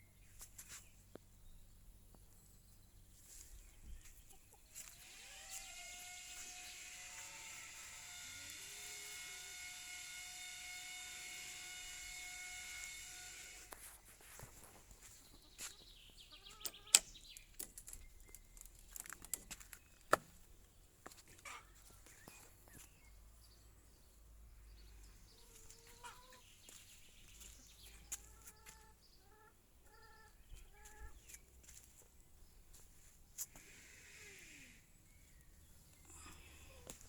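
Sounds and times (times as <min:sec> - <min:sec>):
chickens clucking: 0:03.8 - 0:05.0, 0:21.3 - 0:22.5, 0:25.3 - 0:26.6, 0:27.5 - 0:31.2.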